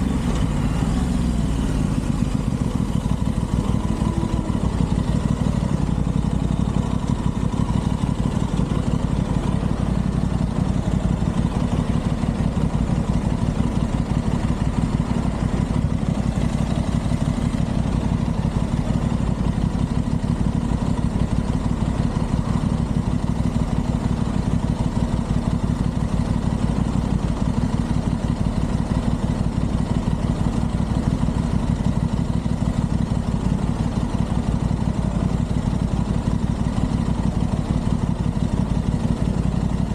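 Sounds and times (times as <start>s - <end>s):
motorcycle engine running steadily: 0.0s - 39.9s.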